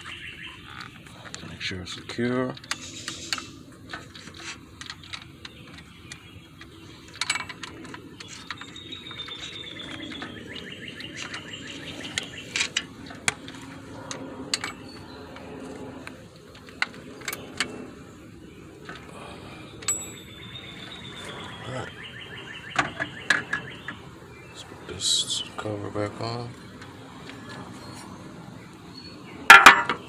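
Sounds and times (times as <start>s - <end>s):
hand tools clicking and knocking: 2.5s - 17.7s, 19.8s - 20.2s, 29.5s - 30.0s.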